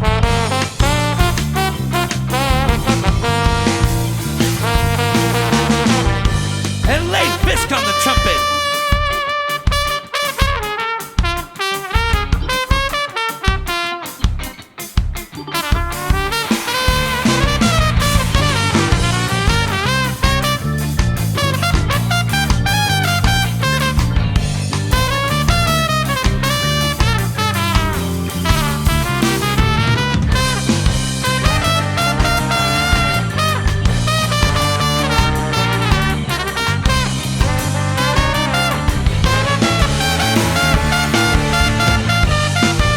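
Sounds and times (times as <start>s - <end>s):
walking bass: 0.0s - 9.2s, 15.2s - 42.9s
organ: 0.0s - 10.6s, 11.2s - 42.9s
horn melody: 0.0s - 14.6s, 15.6s - 42.9s
trumpet solo: 0.0s - 14.6s, 15.6s - 42.9s
guitar: 0.0s - 42.9s
ska band drums and rhythm section: 0.0s - 42.9s.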